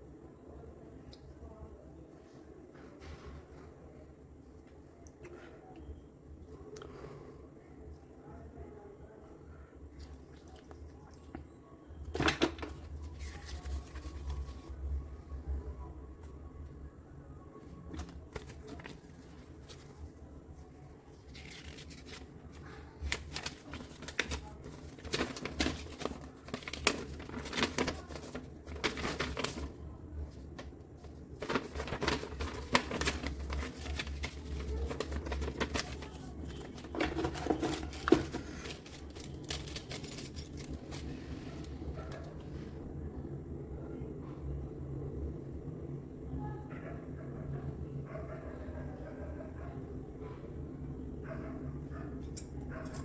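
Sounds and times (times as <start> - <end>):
packaging rustling and crinkling: 12.1 - 14.9, 17.6 - 42.2.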